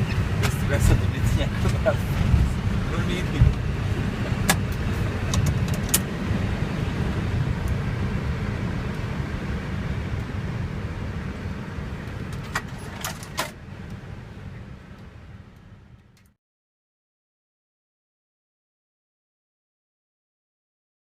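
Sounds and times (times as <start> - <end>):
airliner cockpit rumble: 0.0 - 16.4.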